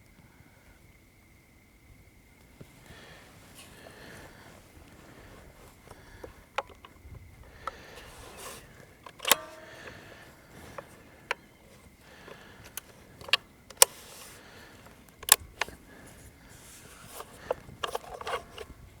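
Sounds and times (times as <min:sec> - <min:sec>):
sharp clicks and light knocks: 0:05.6 - 0:18.7.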